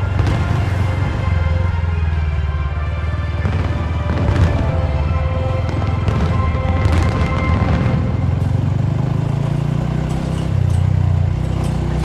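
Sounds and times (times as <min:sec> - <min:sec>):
small motorcycle engine running: 0:07.6 - 0:12.0.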